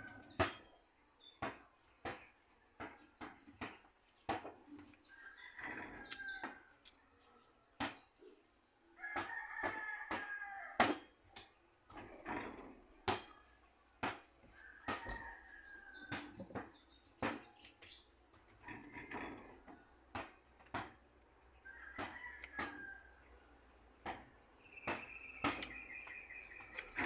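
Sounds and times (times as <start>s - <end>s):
rooster crowing: 5.1s - 6.7s, 9.0s - 11.0s, 14.5s - 16.5s, 21.6s - 23.3s.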